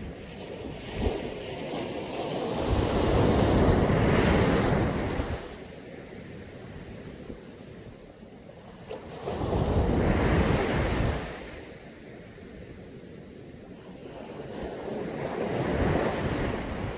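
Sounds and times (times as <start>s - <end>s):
sea waves breaking on beach: 0.0s - 7.7s, 13.8s - 16.9s.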